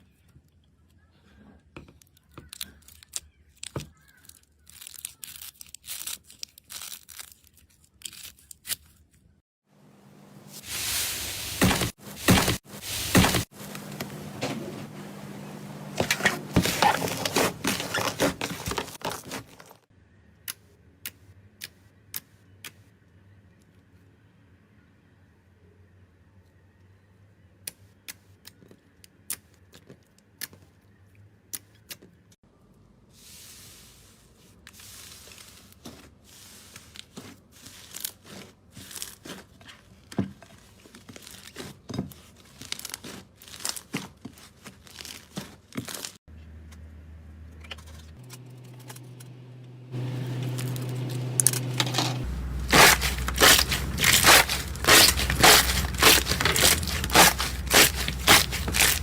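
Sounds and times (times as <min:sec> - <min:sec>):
rapid loud crunching: 0:16.0 - 0:19.8, 0:49.9 - 0:59.0.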